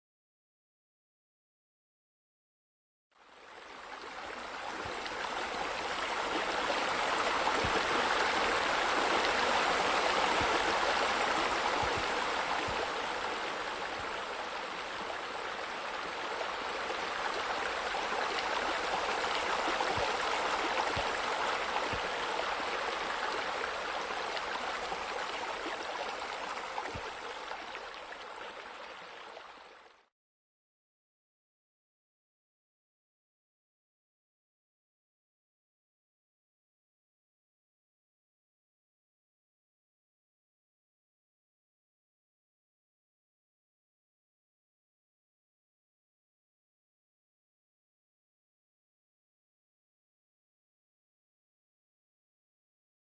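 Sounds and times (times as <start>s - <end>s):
running water flowing: 3.3s - 30.1s.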